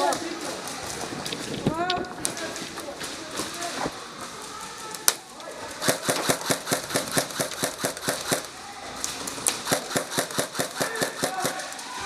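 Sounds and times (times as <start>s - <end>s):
airsoft guns firing: 5.8s - 8.6s, 9.5s - 12.0s.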